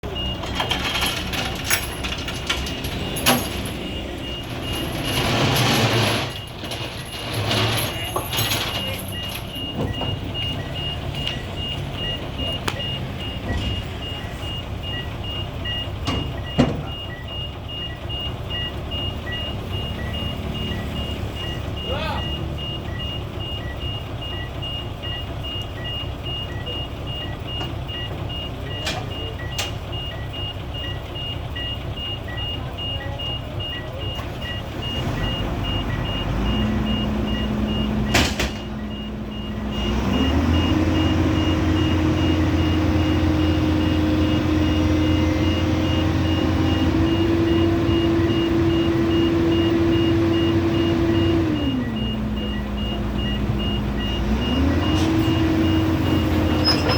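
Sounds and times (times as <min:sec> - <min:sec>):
excavator diesel engine: 0:00.0 - 0:56.9
alarm beeping: 0:00.2 - 0:56.9
sharp metallic clanks: 0:00.3 - 0:10.2.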